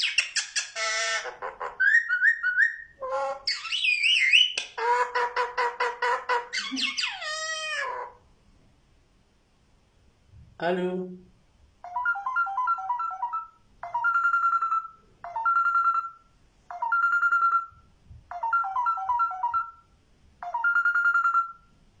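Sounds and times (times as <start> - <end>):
telephone ringtone melody: 11.8 - 21.7.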